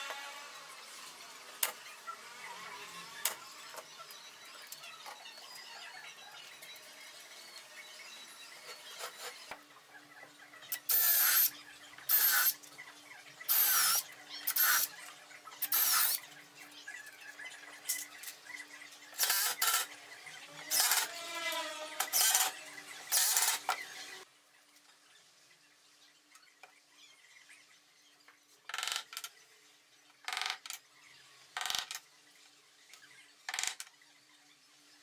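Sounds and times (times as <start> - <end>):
power tool bursts with squeal: 10.8 - 11.5, 12.1 - 12.6, 13.5 - 15.0, 15.6 - 16.2, 20.6 - 23.7.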